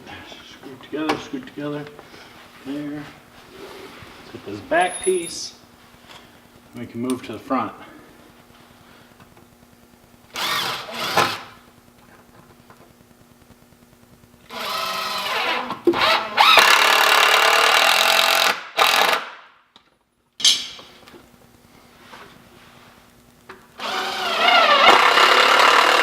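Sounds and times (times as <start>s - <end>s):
drill motor whining: 10.3s - 11.6s, 14.5s - 19.2s, 23.8s - 26.0s.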